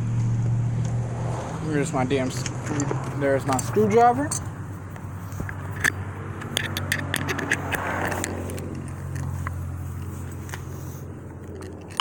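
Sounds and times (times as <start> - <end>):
screwdriver metallic clicks and taps: 5.4 - 9.6.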